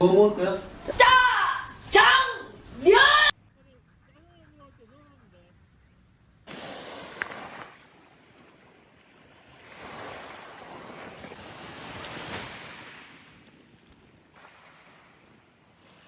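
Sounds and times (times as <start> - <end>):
sea waves washing ashore: 6.5 - 16.0.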